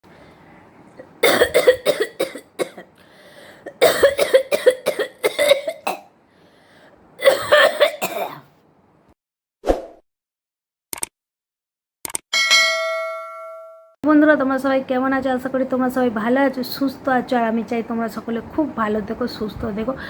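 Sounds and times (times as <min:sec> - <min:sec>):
person coughing: 0:01.2 - 0:02.9, 0:03.6 - 0:06.1, 0:07.2 - 0:08.6.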